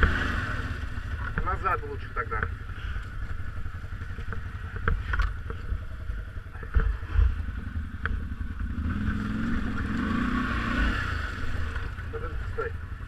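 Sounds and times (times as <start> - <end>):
off-road vehicle engine revving: 0.0 - 13.0
vehicle knocks and clatter: 1.1 - 7.4.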